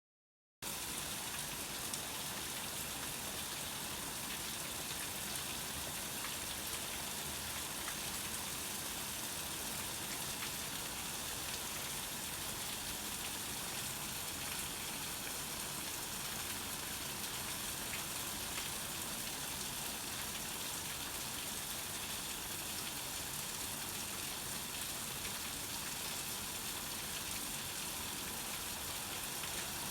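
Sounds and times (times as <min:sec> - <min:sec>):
steady rain hiss: 0:09.7 - 0:29.9.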